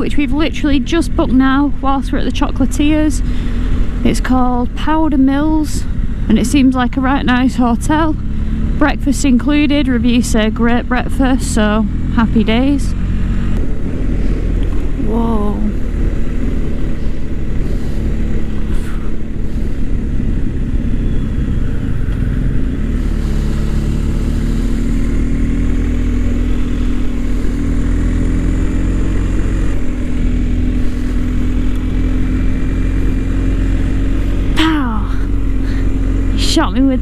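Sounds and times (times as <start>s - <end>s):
motorcycle engine pulling: 0.0s - 37.0s
wind rush: 12.9s - 37.0s.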